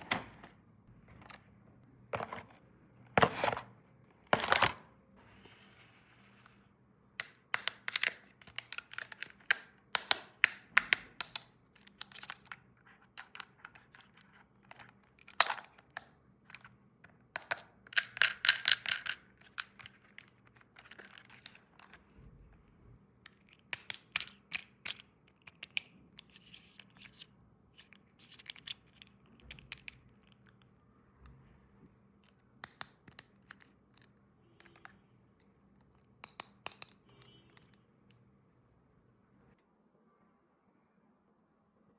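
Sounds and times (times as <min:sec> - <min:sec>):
plastic toy pieces clicking: 0:17.4 - 0:19.9.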